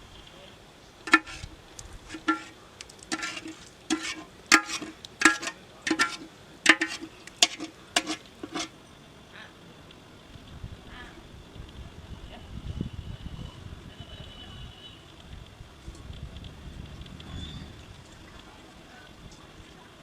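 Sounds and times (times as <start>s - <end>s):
metal spoon scraping metal pot: 1.1s - 8.7s.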